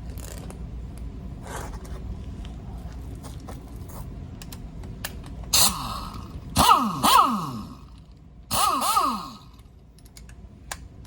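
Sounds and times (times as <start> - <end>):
impact wrench burst: 5.5 - 9.6.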